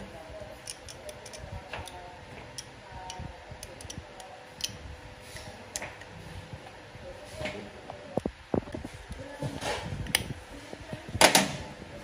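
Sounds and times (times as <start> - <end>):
faint steady hum: 0.0 - 12.0
tools clicking and tapping: 0.6 - 4.8.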